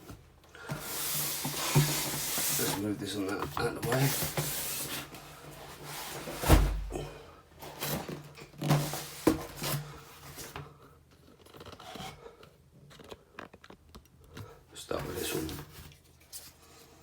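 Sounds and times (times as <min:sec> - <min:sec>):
heavy thump of box: 0:06.2 - 0:07.0.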